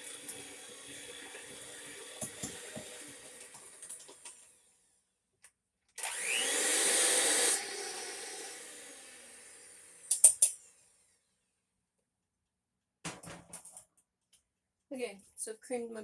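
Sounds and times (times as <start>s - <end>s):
electric mixer whining: 0.0s - 4.6s, 6.0s - 10.5s.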